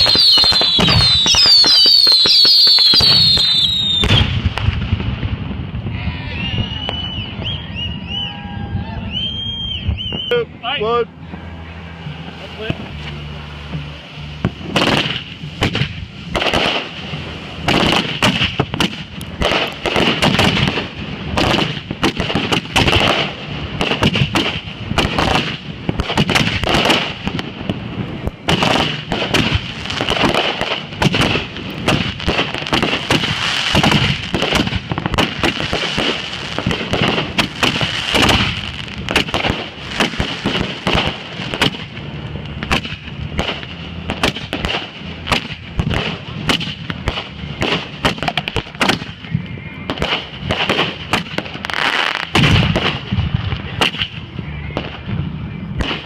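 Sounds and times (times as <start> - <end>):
fireworks bangs and crackles: 0.0 - 56.0
high-pitched whine: 5.8 - 17.8, 48.5 - 56.0.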